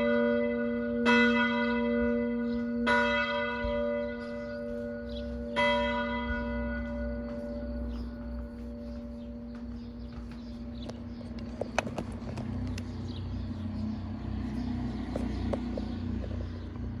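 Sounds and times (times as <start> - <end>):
church bells humming: 0.0 - 11.6.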